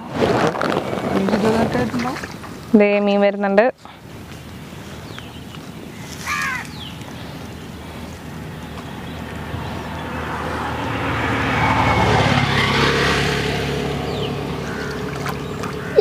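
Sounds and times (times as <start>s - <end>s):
motor engine passing: 6.0s - 16.0s.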